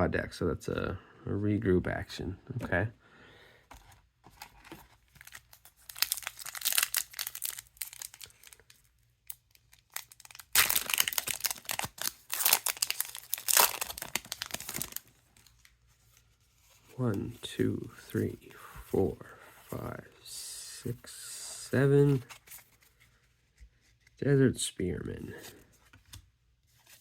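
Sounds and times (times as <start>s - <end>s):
wrapper tearing and crinkling: 5.2s - 15.7s.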